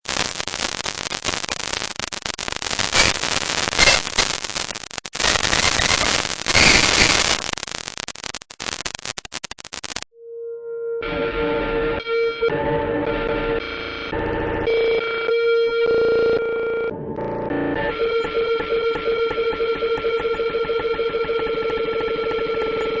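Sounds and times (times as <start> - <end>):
glitchy crackling static: 0.0 - 10.1, 12.4 - 23.0
electronic hum tone: 10.1 - 23.0.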